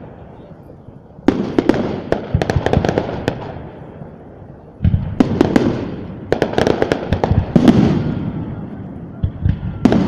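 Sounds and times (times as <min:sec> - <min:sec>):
fireworks cracks and booms: 0:01.2 - 0:10.0.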